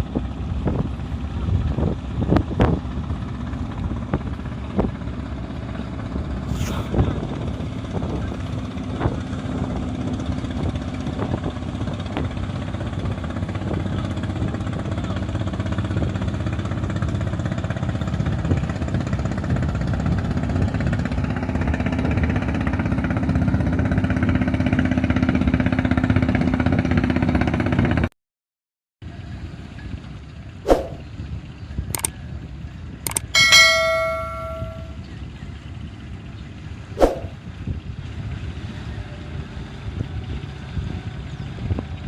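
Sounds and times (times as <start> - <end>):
boat engine running: 0.0 - 27.8, 32.7 - 35.0.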